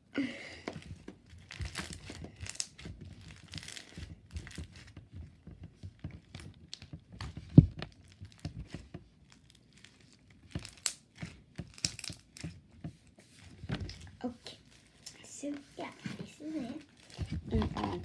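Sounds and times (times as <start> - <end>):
slime squishing: 0.8 - 18.0.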